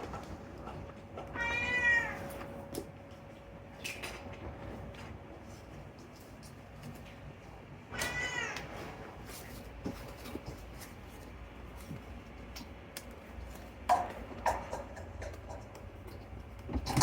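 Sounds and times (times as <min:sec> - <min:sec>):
cat meowing: 0:01.3 - 0:02.4, 0:07.9 - 0:08.8.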